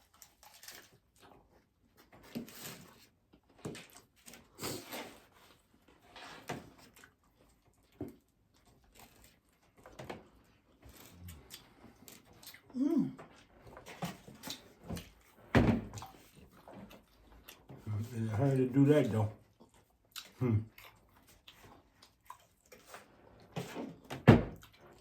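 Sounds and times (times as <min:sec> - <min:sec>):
biting and chewing crunchy taco: 0:00.0 - 0:15.4, 0:16.0 - 0:18.1, 0:19.4 - 0:25.0.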